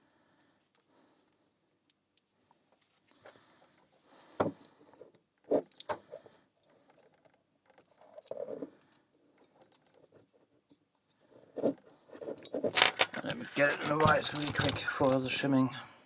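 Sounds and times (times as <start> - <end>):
metal tools scraping: 12.2 - 15.4.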